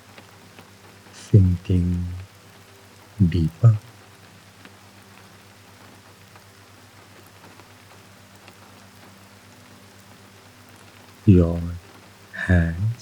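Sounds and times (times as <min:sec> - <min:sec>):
gentle rain hiss: 0:00.0 - 0:13.0
raindrop ticks: 0:00.0 - 0:13.0
low steady hum: 0:01.0 - 0:06.8, 0:08.8 - 0:13.0.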